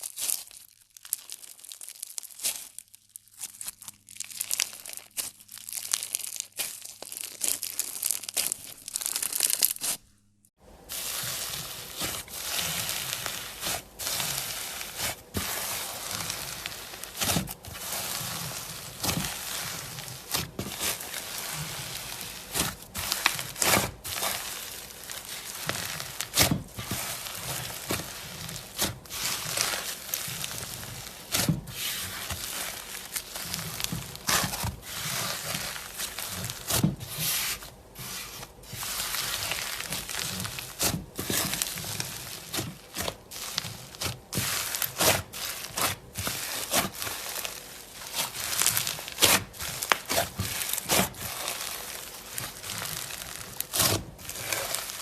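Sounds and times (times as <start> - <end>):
crunchy slime crackling and popping: 0.0 - 55.0.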